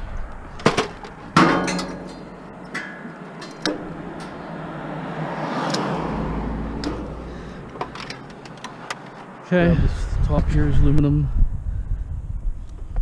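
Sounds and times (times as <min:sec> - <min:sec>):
vehicle passing: 0:02.1 - 0:10.6.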